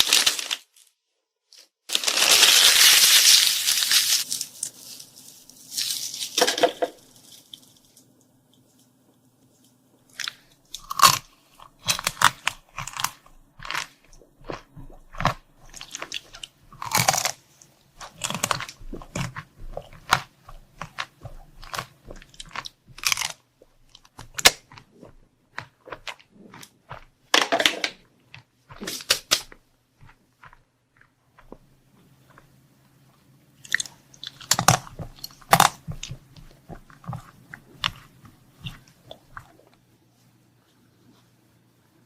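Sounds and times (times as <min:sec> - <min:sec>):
crunchy food being bitten: 0:10.1 - 0:27.3, 0:28.2 - 0:39.8.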